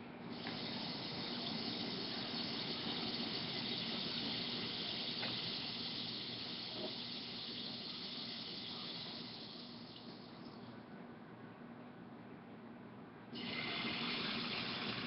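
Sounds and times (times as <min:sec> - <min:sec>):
pancake batter sizzling in a pan: 0:00.3 - 0:10.4, 0:13.4 - 0:15.0.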